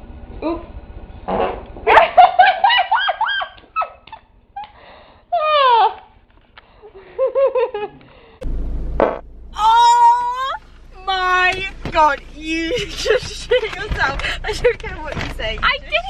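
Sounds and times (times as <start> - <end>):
squeaky farts: 1.2 - 1.7.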